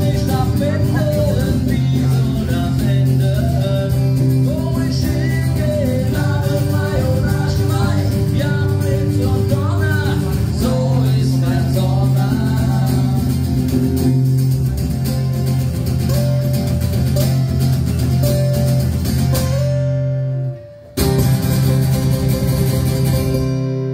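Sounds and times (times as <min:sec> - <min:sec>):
person singing: 0:00.0 - 0:14.0
song with guitar and bass: 0:00.0 - 0:23.9.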